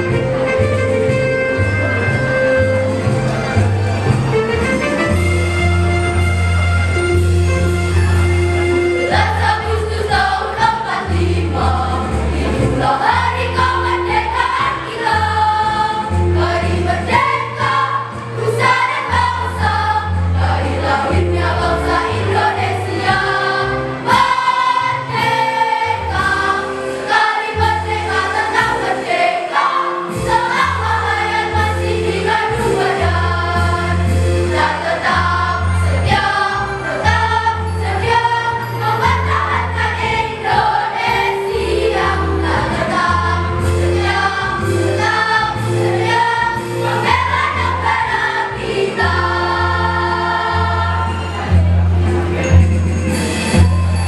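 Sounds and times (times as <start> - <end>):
choir singing in parts: 9.0 - 51.7.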